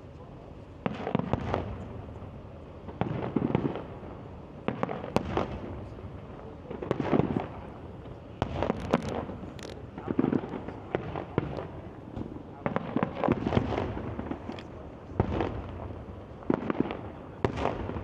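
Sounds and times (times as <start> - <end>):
firework bangs: 0.8 - 2.0, 2.9 - 5.9, 6.6 - 7.7, 8.4 - 14.5, 15.1 - 18.0.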